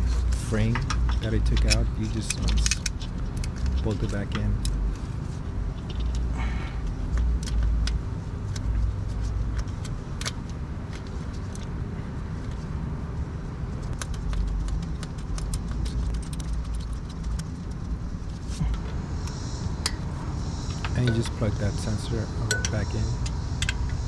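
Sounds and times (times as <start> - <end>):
steady low rumble: 0.0 - 24.0
metallic clicks of hand tool and bolt: 0.7 - 4.8, 22.5 - 24.0.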